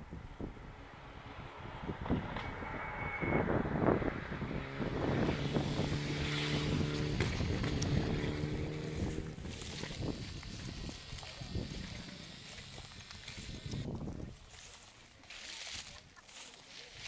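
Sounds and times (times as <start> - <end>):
wind noise on microphone: 0.0 - 14.8
engine running steadily: 4.6 - 13.9.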